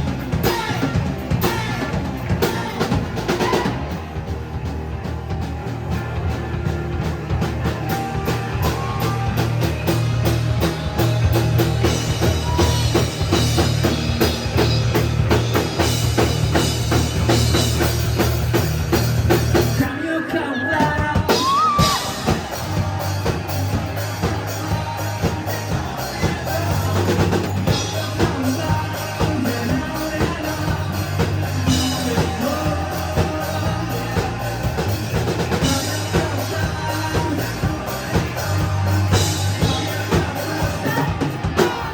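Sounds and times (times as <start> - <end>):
live rock band playing: 0.0 - 41.9.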